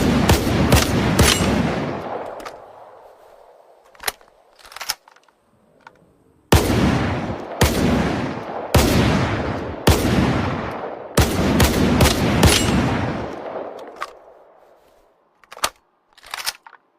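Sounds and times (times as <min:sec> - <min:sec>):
shotgun shots echoing: 0:00.0 - 0:03.0, 0:06.5 - 0:14.3.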